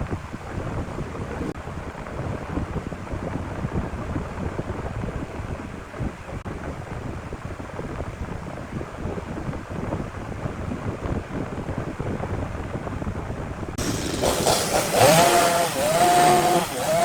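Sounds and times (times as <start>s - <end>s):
wind buffeting microphone: 0.0s - 17.0s
loud machine noise: 13.8s - 17.0s.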